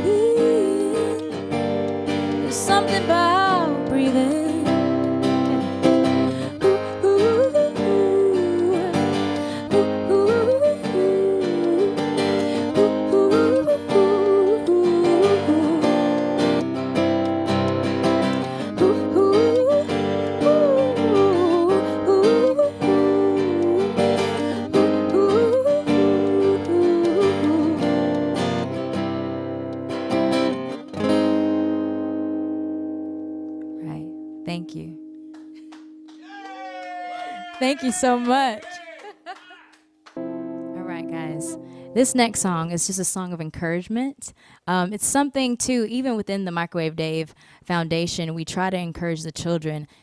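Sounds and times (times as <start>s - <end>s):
person singing wordless melody: 0.0s - 17.0s, 18.4s - 28.7s, 40.6s - 42.7s
acoustic guitar strumming: 0.0s - 43.1s.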